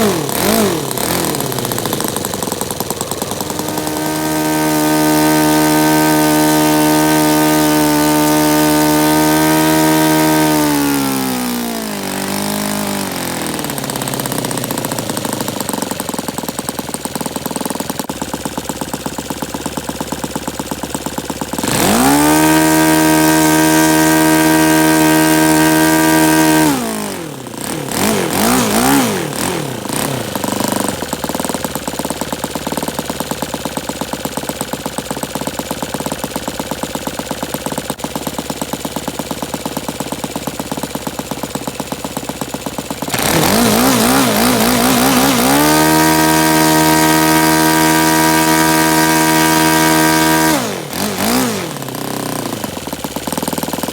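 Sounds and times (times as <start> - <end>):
model aircraft engine revving: 0.0 - 53.9.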